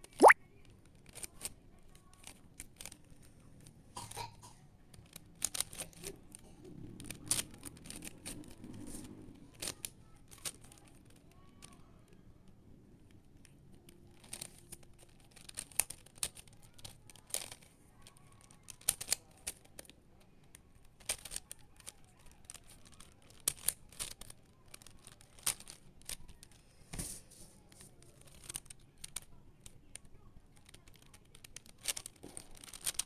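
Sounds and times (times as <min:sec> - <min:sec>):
puzzle cube clicking and scraping: 0:05.0 - 0:06.2, 0:06.9 - 0:11.2, 0:13.0 - 0:19.9, 0:20.5 - 0:33.0.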